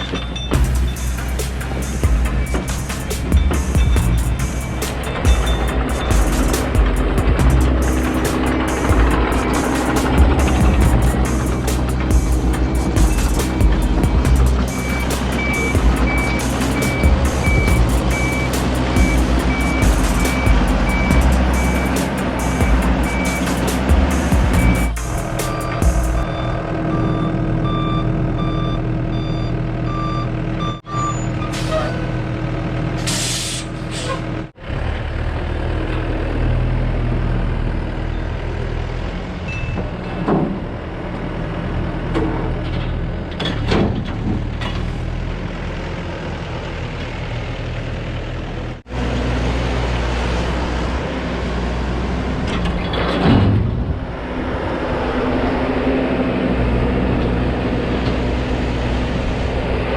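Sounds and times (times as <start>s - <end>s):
alarm beeping: 0.0s - 31.4s
excavator diesel engine running: 0.0s - 59.9s.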